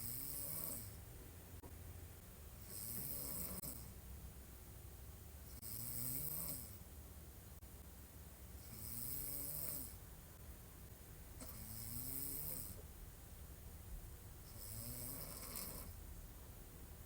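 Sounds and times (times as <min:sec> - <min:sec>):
woman snoring: 0:00.0 - 0:00.9, 0:02.7 - 0:03.8, 0:05.6 - 0:06.7, 0:08.7 - 0:10.0, 0:11.4 - 0:12.8, 0:14.5 - 0:16.0.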